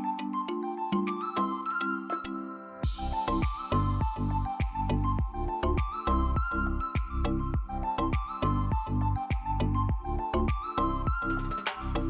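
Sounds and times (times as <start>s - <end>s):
electronic music with deep bass: 2.8s - 12.0s.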